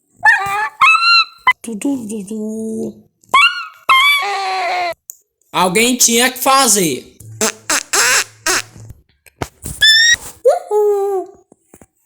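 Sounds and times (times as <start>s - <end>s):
whimper-like whining: 0.1s - 1.6s, 3.4s - 5.0s
high-pitched squeal: 7.4s - 8.8s, 9.8s - 10.2s.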